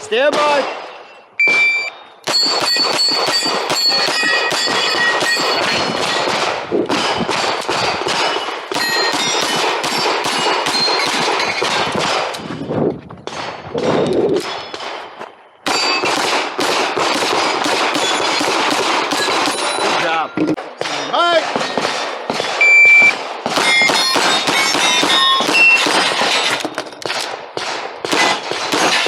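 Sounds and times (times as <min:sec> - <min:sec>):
ringing steel plates: 0:02.3 - 0:06.4, 0:08.2 - 0:11.9, 0:13.9 - 0:16.2, 0:17.9 - 0:20.6, 0:23.6 - 0:27.0
rapid pistol fire: 0:02.3 - 0:12.3, 0:15.7 - 0:29.0.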